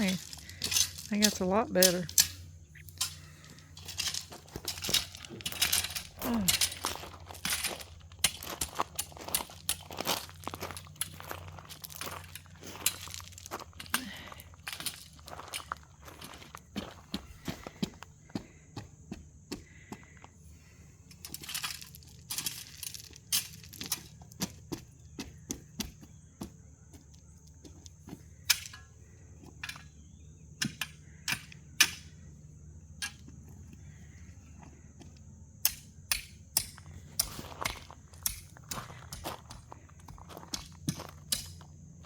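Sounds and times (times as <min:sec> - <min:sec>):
footsteps: 0:00.0 - 0:20.4
gravel crunching and scraping: 0:00.0 - 0:42.0
low steady hum: 0:00.0 - 0:42.0.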